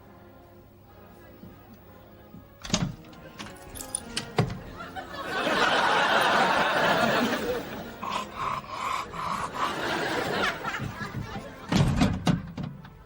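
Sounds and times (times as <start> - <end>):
person laughing: 6.5 - 11.7.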